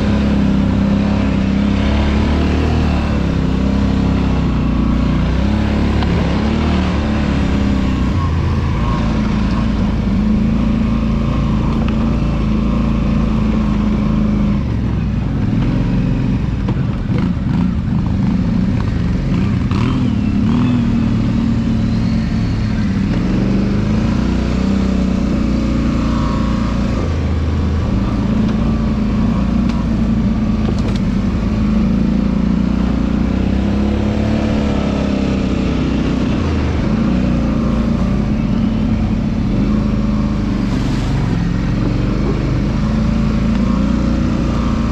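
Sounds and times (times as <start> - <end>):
rushing riding noise: 0.0 - 14.9, 35.8 - 44.9
quad bike engine running: 0.0 - 44.9.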